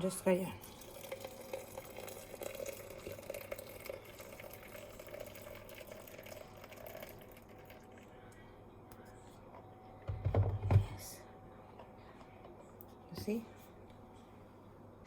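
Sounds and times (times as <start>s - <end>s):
water pouring from a kettle: 0.6s - 8.0s.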